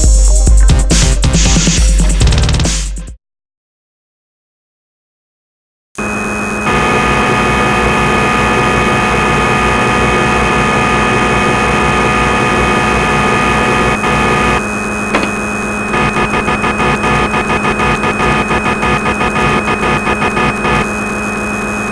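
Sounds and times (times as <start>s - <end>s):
mechanical hum: 6.0s - 21.9s
rapid pulsing: 6.7s - 14.7s, 15.3s - 21.1s.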